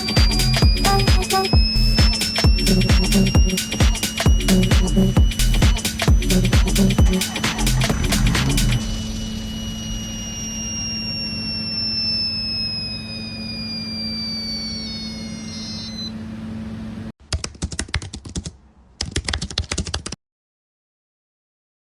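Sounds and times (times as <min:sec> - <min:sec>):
rapid clicking bursts: 0:00.0 - 0:08.8, 0:17.3 - 0:20.2
faint high falling tones: 0:00.0 - 0:16.2
steady hum: 0:00.0 - 0:17.1.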